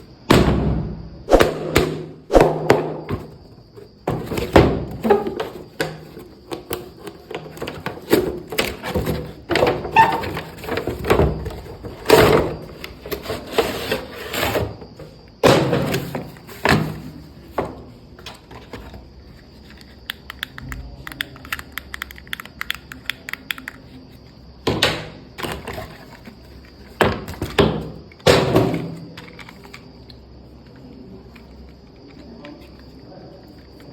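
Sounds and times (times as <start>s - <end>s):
knocks and rustling of packaging: 2.4s - 19.1s.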